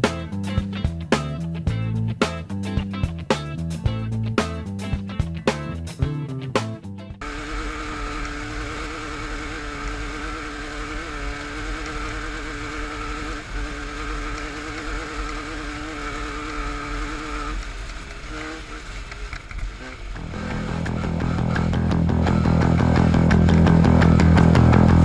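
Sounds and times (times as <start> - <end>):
race vehicle engine running: 0.0 - 25.0
engine blips: 7.2 - 25.0.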